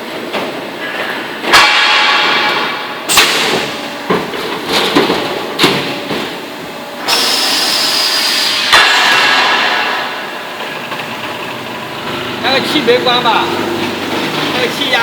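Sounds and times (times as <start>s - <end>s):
sharp metallic bangs: 1.5s - 4.0s, 8.5s - 11.6s
compressed air hiss: 7.1s - 8.7s.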